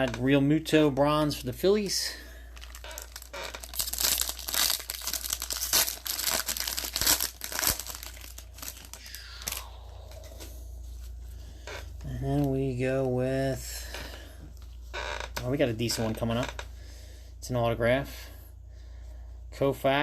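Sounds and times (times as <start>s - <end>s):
plastic packaging crinkling: 2.5s - 9.6s.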